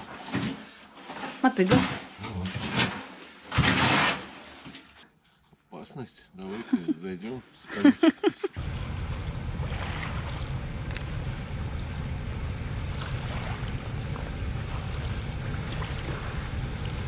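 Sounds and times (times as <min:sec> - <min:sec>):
wind rumbling on microphone: 0:08.6 - 0:17.0.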